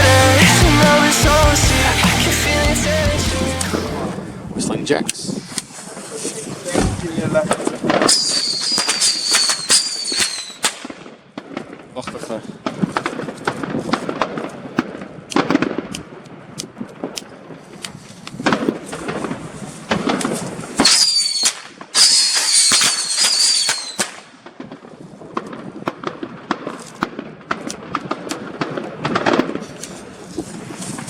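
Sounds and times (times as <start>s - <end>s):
firework pops and crackles: 5.0s - 31.0s
shrill firework whistle: 8.0s - 10.7s, 20.8s - 24.2s.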